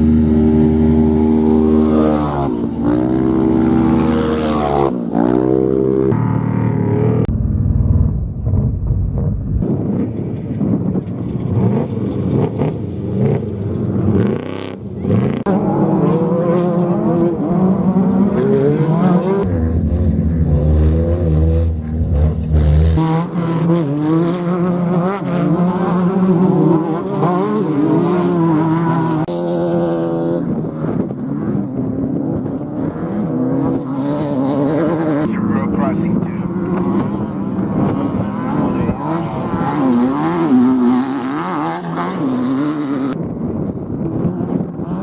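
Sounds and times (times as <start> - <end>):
race engines revving: 0.0 - 45.0
heavy low rumble: 6.2 - 11.2.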